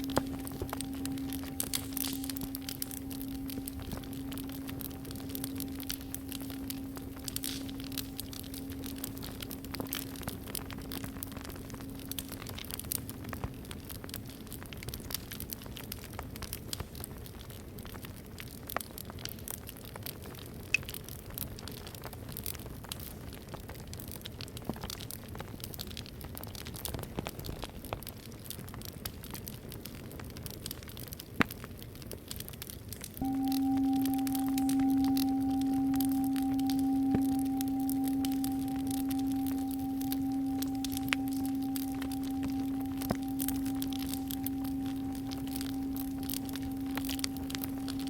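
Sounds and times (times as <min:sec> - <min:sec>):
singing bowl hum: 0:00.0 - 0:13.6, 0:33.2 - 0:48.0
wood fire crackling: 0:00.0 - 0:48.0.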